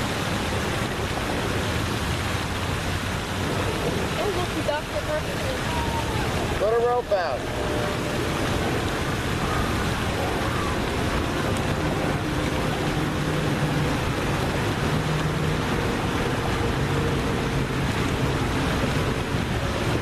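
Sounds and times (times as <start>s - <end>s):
lake water: 0.0s - 20.0s
wind over microphone: 0.0s - 20.0s
faint hums: 0.5s - 20.0s.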